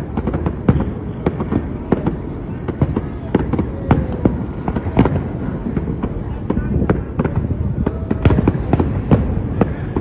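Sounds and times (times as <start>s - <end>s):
fireworks popping and banging: 0.0s - 10.0s.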